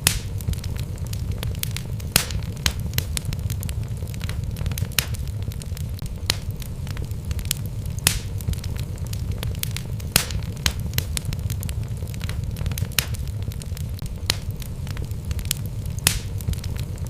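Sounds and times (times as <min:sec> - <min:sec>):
fire rumbling in a fireplace: 0:00.0 - 0:17.0
wood crackling and popping: 0:00.0 - 0:17.0.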